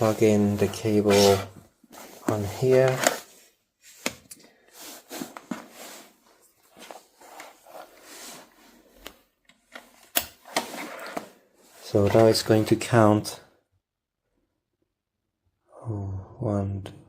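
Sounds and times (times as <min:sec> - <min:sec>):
cable handling noise: 0:00.0 - 0:03.3.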